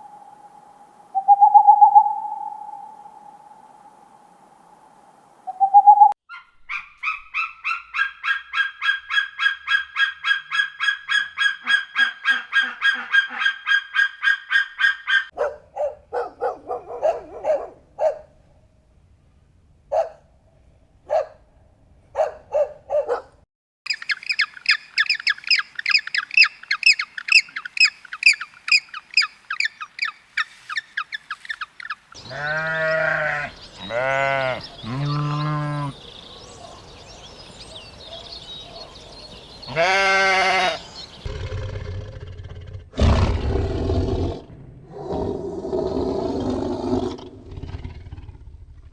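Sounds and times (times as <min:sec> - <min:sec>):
bird calls: 0:00.0 - 0:04.0, 0:05.5 - 0:15.3, 0:23.9 - 0:41.4.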